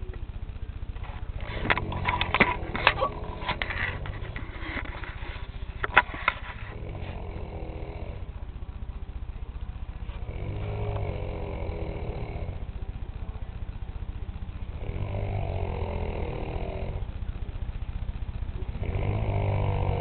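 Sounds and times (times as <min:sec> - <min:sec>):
man snoring loudly: 0:06.7 - 0:08.4, 0:10.2 - 0:12.8, 0:14.7 - 0:17.1, 0:18.7 - 0:20.0.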